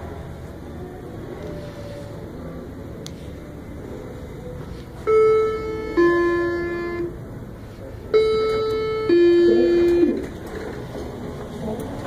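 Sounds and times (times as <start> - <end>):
steady background hum: 0.0 - 12.0
elevator chime: 5.1 - 7.2, 8.1 - 10.2.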